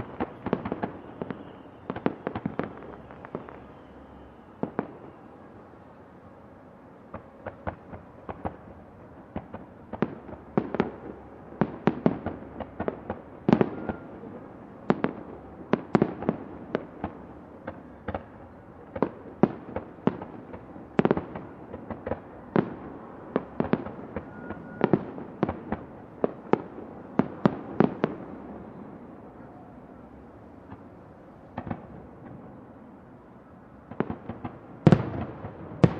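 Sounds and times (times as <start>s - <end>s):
fireworks exploding: 0.0s - 5.7s, 7.0s - 33.0s, 33.7s - 35.9s
steady outdoor hiss: 0.0s - 35.9s.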